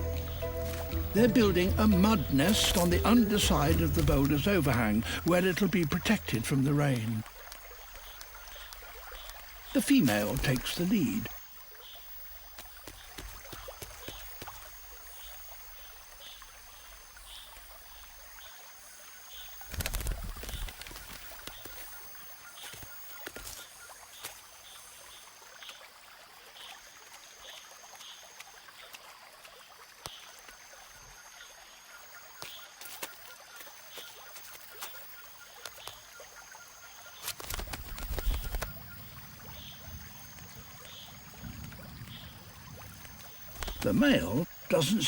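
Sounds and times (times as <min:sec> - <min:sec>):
wet clicks of mud being worked: 0:12.5 - 0:14.8, 0:27.1 - 0:30.6, 0:37.1 - 0:38.8, 0:43.1 - 0:44.1
low rustling wing flutter: 0:19.6 - 0:24.4, 0:37.1 - 0:44.0.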